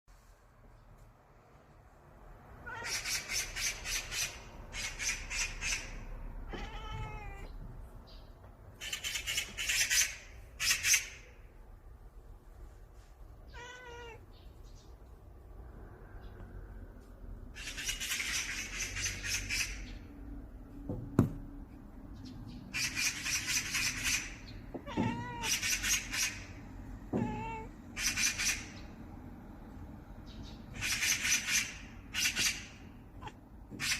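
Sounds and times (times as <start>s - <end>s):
cat meowing: 2.6s - 3.3s, 6.4s - 7.6s, 13.5s - 14.4s, 24.7s - 25.6s, 27.1s - 27.9s.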